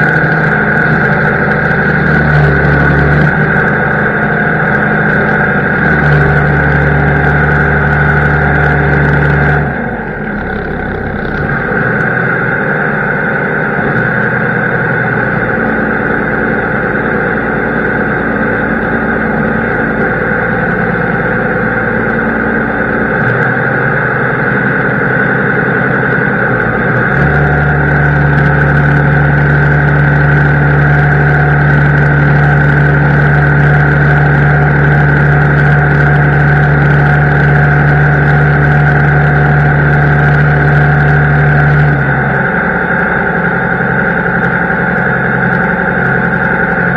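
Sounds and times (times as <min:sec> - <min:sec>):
constant high whine: 0:00.0 - 0:46.9
heavy machine engine running: 0:00.0 - 0:46.9.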